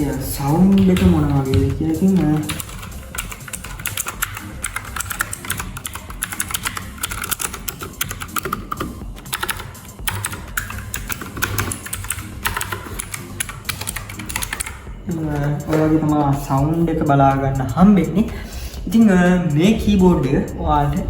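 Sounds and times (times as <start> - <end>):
mechanical keyboard typing: 0.5 - 16.3.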